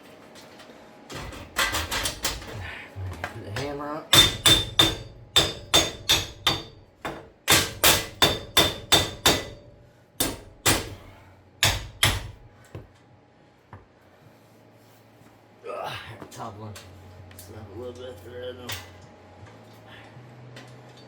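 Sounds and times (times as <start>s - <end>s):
hammer striking metal: 3.6s - 12.5s.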